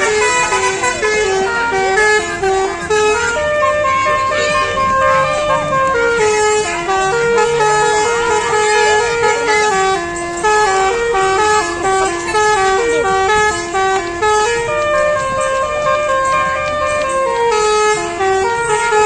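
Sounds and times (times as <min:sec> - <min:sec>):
musical air horn melody: 0:00.0 - 0:19.0.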